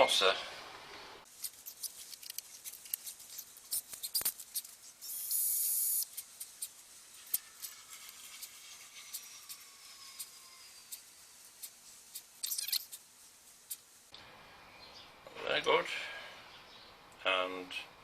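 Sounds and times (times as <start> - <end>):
hand tool clicks and scrapes: 1.3 - 13.0.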